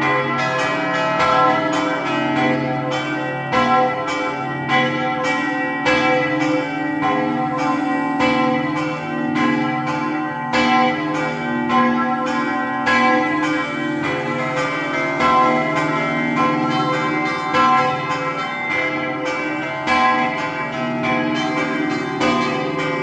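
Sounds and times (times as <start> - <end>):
church bells ringing: 0.0 - 23.0.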